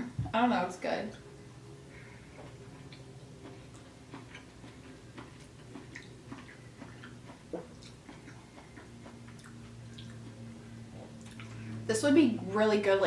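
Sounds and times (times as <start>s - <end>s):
low steady hum: 0.0s - 13.0s
chewing noodles: 2.3s - 11.7s.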